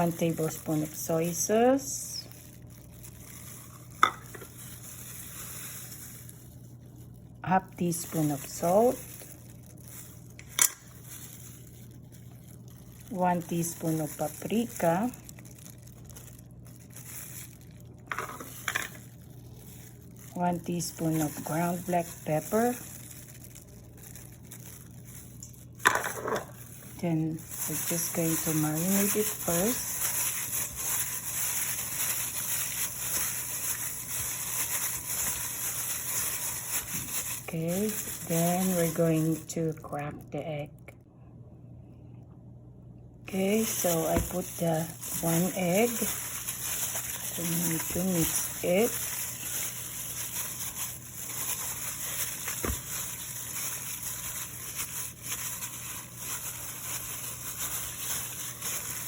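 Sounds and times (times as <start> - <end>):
wet stirring by hand: 8.0 - 39.5, 43.3 - 59.0
low hum: 26.4 - 59.0.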